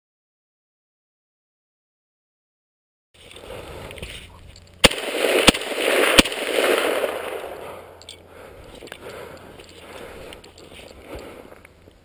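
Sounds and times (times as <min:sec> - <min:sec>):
gunshot echo: 0:04.8 - 0:08.0
rifle shots: 0:04.8 - 0:08.0.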